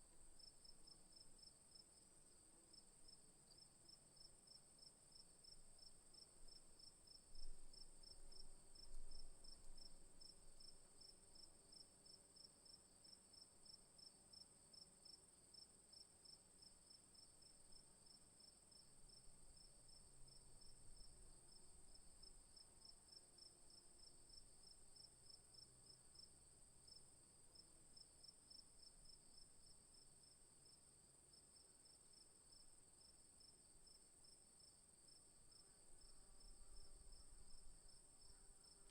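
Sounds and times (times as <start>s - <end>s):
crickets chirping: 26.9s - 38.9s.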